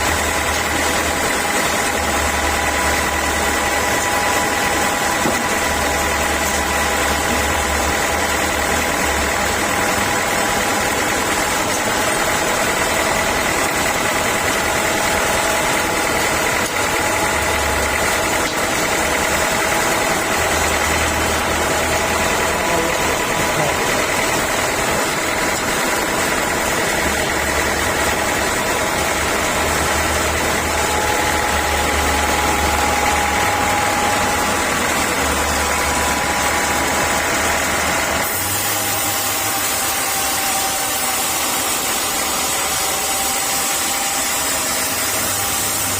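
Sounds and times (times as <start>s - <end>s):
sawmill machinery whining: 0.0s - 45.9s
low hum: 15.1s - 38.4s.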